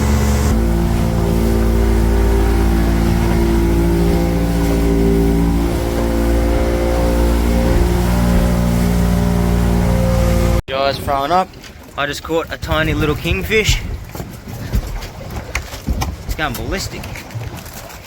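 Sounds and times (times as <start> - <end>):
outboard motor running: 0.0 - 18.0.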